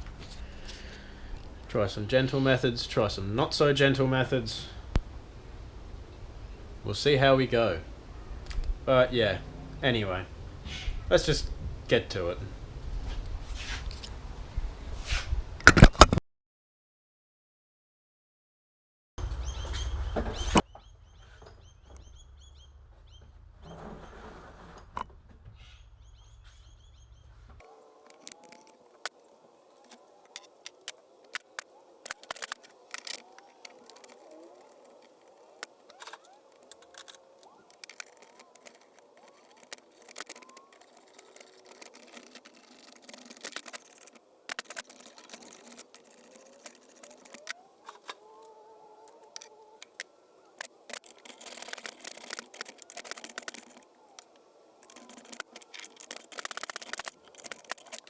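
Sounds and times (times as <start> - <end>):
birds chirping: 19.2 - 24.2, 25.5 - 58.0.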